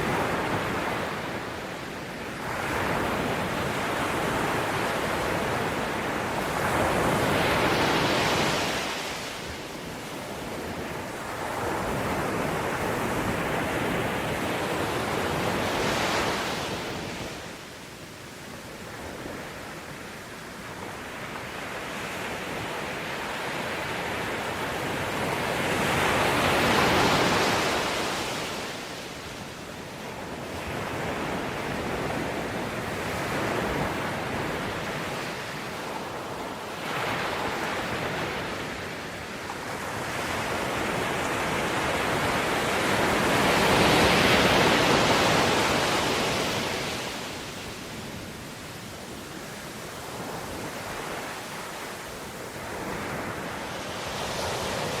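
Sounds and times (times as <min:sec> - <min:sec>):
ocean waves breaking on shore: 0:00.0 - 0:55.0.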